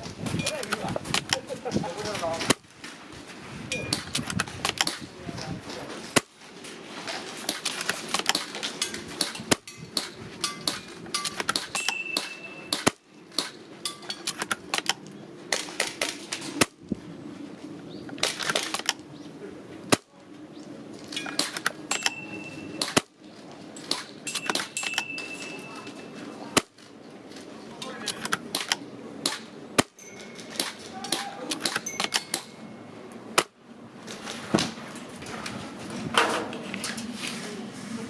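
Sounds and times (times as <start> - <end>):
airsoft rifle shots snapping: 3.9 - 5.1, 7.4 - 13.6, 14.3 - 16.8, 18.2 - 19.0, 21.2 - 22.2, 22.8 - 23.2, 23.8 - 25.1, 28.0 - 32.6.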